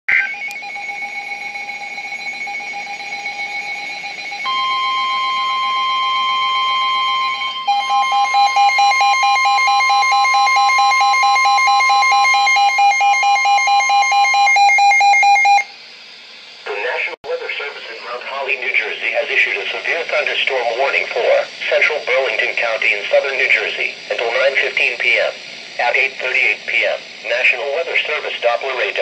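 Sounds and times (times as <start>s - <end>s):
fast-pulsing alarm layer: 0.1s - 15.8s
pulsing electronic alarm tones: 0.1s - 15.8s
higher steady tone: 0.2s - 15.7s.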